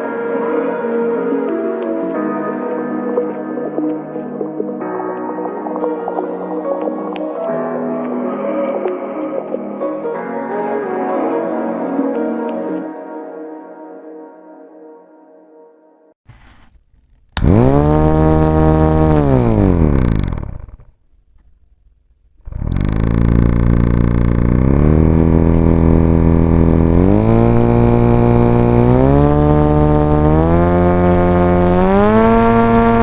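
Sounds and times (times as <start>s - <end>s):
small electric motor whining: 17.4s - 20.9s, 22.5s - 33.0s.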